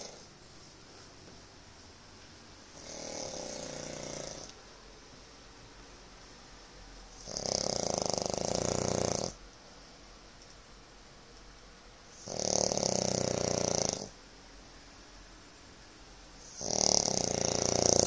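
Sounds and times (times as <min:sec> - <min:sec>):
man snoring: 0:02.8 - 0:04.5, 0:07.2 - 0:09.4, 0:12.2 - 0:14.1, 0:16.4 - 0:18.0.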